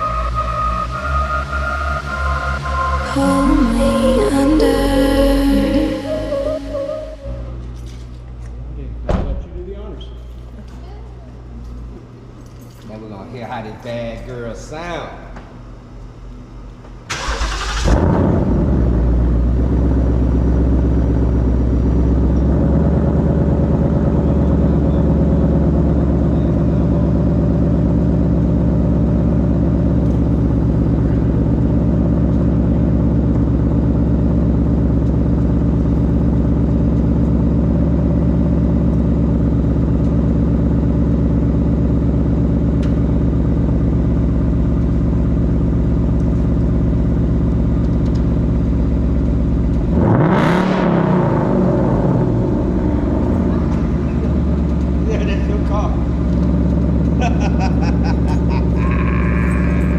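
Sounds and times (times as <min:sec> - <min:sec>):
car engine starting and idling: 0:00.0 - 0:10.0, 0:16.8 - 0:59.9.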